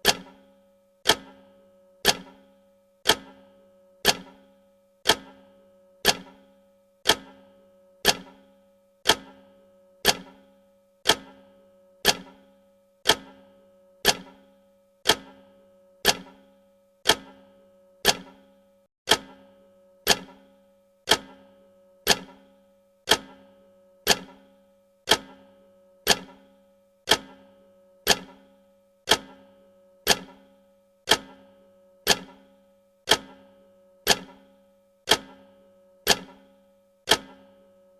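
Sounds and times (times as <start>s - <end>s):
clock ticking: 0.0s - 0.4s, 1.0s - 2.4s, 3.0s - 4.4s, 5.0s - 6.4s, 7.0s - 8.4s, 9.0s - 10.4s, 11.0s - 12.4s, 13.0s - 18.4s, 19.1s - 19.4s, 20.0s - 20.5s, 21.1s - 22.5s, 23.1s - 24.5s, 25.1s - 26.5s, 27.1s - 28.5s, 29.1s - 30.5s, 31.1s - 32.5s, 33.1s - 34.5s, 35.1s - 36.5s, 37.1s - 37.6s.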